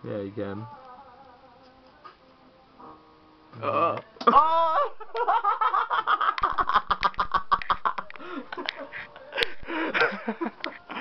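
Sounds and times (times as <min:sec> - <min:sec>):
young men laughing: 0:04.3 - 0:11.0.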